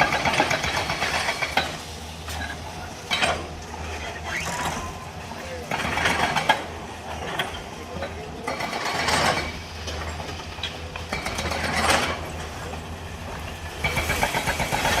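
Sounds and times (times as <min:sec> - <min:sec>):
demolition machinery running: 0:00.0 - 0:15.0
grinding and clattering: 0:05.7 - 0:15.0.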